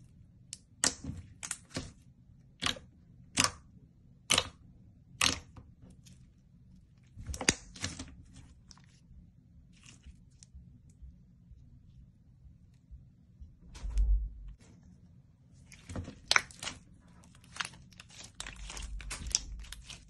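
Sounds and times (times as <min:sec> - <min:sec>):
slime popping and clicking: 0:04.3 - 0:04.6, 0:05.2 - 0:05.5.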